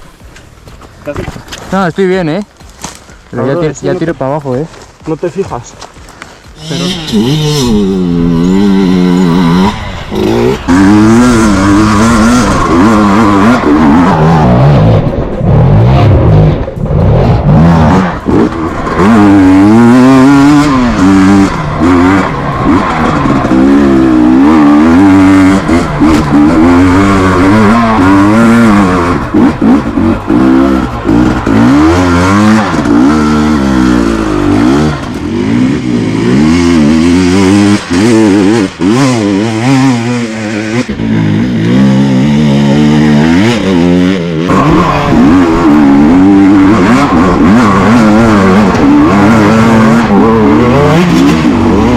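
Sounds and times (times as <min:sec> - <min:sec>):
motorcycle engine revving: 0:05.8 - 0:51.9.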